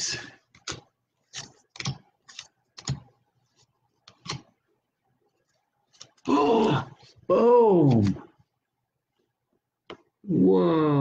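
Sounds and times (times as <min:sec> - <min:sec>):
trading cards flipping: 0:00.5 - 0:03.1, 0:05.9 - 0:06.3.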